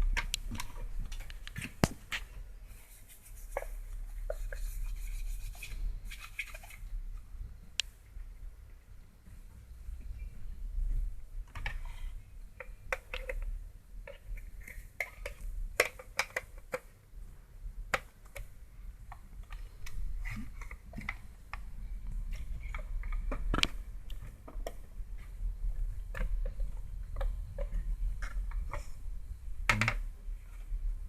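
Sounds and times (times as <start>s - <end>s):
low steady hum: 0.0s - 31.0s.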